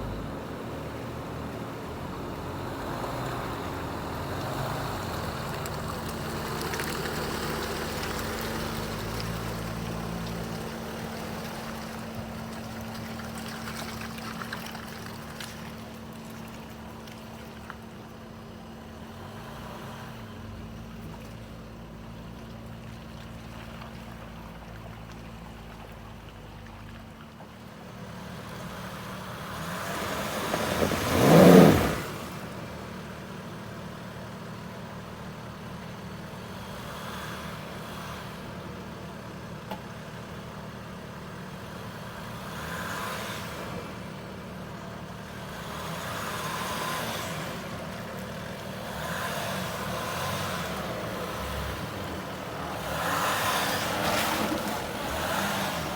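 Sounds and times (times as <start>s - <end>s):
motor vehicle driving past: 28.2s - 32.6s.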